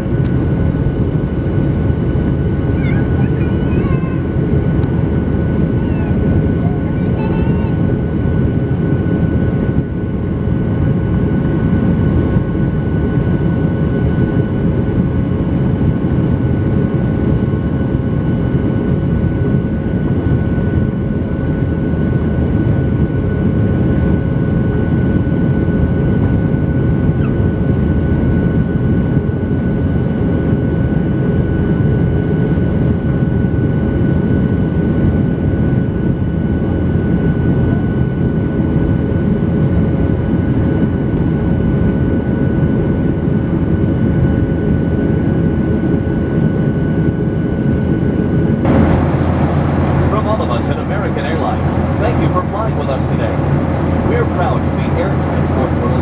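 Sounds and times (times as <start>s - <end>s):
airplane cabin engine rush: 0.0s - 56.0s
steady engine tones: 48.2s - 56.0s.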